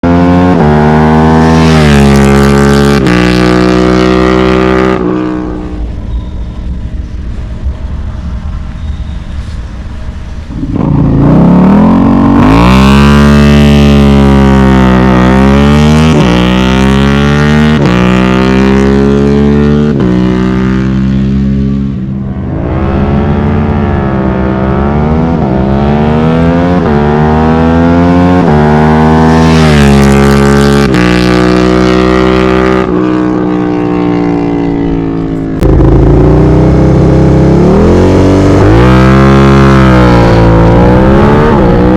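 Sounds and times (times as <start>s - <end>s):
motorcycle accelerating through gears: 0.0s - 6.0s, 10.4s - 41.9s.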